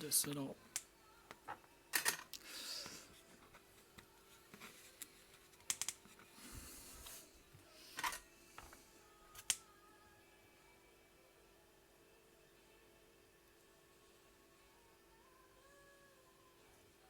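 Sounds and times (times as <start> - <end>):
faint steady hum: 0.0 - 17.0
small tools clicking and tapping: 5.7 - 6.0.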